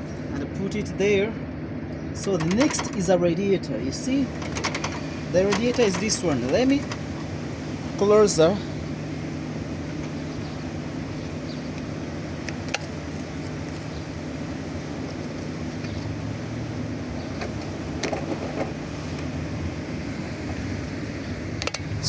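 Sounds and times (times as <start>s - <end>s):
low mechanical hum: 0.0s - 22.0s.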